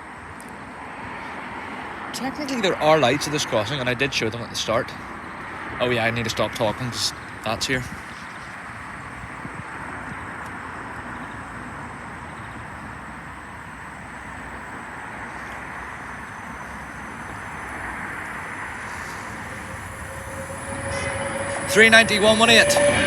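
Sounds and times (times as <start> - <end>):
electric train rushing: 12.7 - 23.0.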